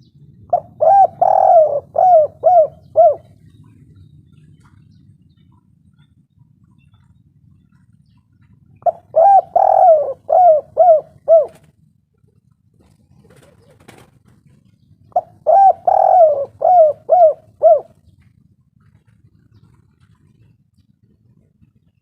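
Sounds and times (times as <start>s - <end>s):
dove cooing: 0.0s - 5.0s, 7.7s - 11.8s, 12.8s - 21.9s.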